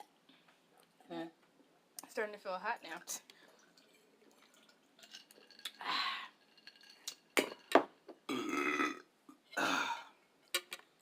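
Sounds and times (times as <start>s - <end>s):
person burping: 8.3s - 10.2s.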